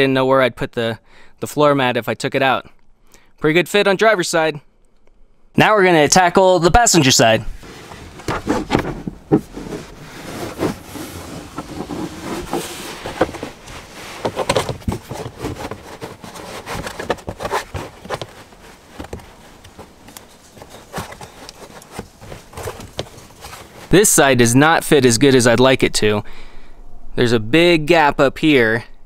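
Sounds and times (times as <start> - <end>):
floor mat knocking and rustling: 7.8 - 23.9.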